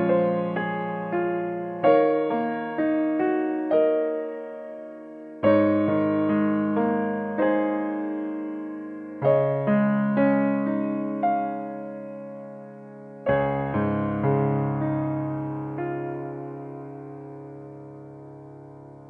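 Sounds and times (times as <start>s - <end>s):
slow piano chords: 0.0s - 19.0s.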